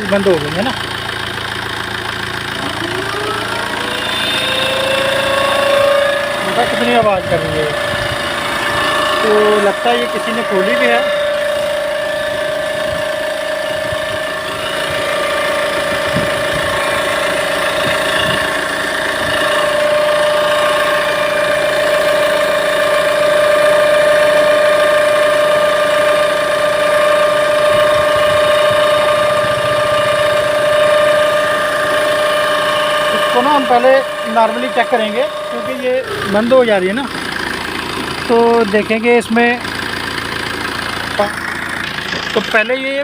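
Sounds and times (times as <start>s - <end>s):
diesel engine idling: 0.0s - 43.0s
high-pitched whine: 2.5s - 43.0s.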